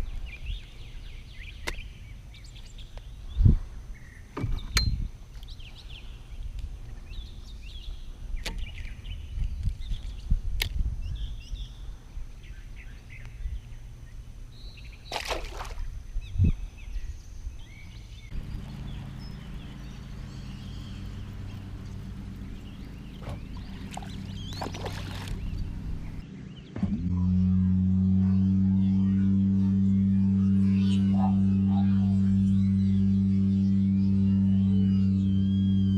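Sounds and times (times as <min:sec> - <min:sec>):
birds chirping: 0:00.0 - 0:10.4, 0:11.0 - 0:35.9
wind rumble on microphone: 0:00.0 - 0:14.9, 0:15.6 - 0:35.9
steady low hum: 0:00.0 - 0:35.9
water sloshing: 0:15.0 - 0:16.0, 0:18.4 - 0:26.2.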